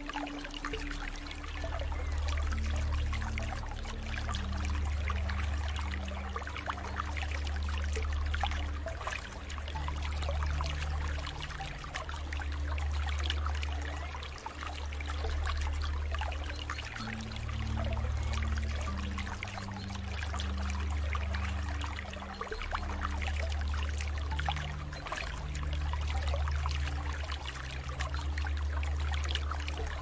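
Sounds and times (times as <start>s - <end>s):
water trickling and pouring: 0.0s - 30.0s.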